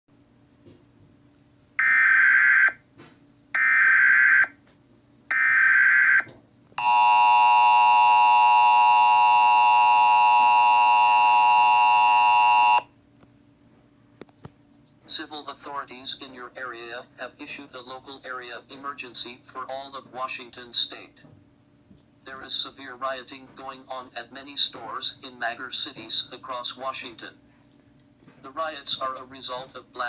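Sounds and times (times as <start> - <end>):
two-tone attention signal: 6.8 - 12.8.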